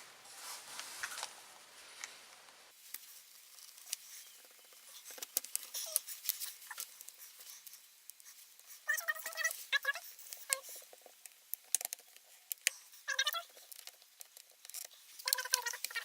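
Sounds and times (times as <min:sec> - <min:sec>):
small clicks and snaps: 0:02.8 - 0:16.0.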